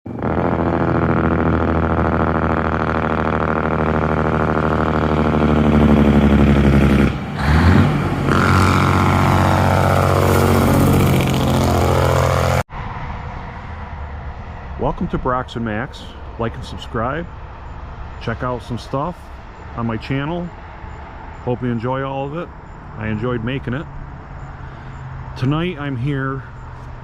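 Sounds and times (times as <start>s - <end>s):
large truck engine revving: 0.1s - 12.7s.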